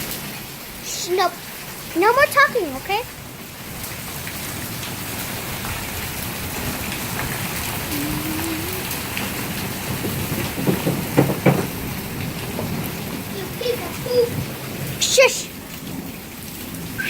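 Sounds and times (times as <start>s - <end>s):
heavy rain pouring: 0.0s - 17.0s
sharp knocks: 10.1s - 11.8s.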